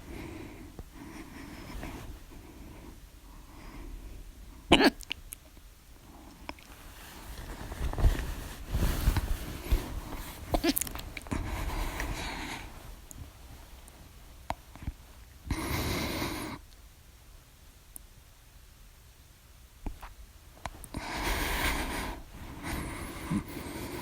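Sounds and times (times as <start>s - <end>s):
woman breathing heavily: 0.0s - 4.6s, 8.3s - 12.9s, 20.9s - 24.0s
woman hiccuping: 4.7s - 5.2s.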